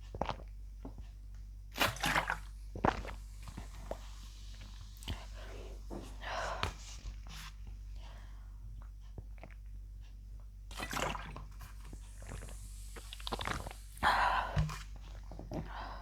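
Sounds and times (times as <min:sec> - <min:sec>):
person swallowing soda: 0:01.8 - 0:04.1, 0:10.7 - 0:15.7.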